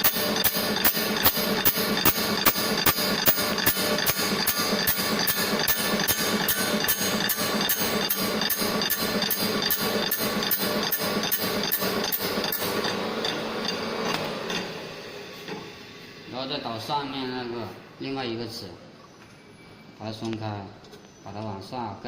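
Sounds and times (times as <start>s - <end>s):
saw blade sharpening grinder: 0.0s - 14.8s.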